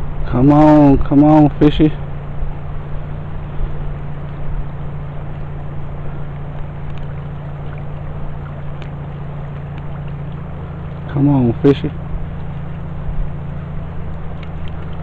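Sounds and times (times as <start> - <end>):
low motor hum: 0.0 - 15.0.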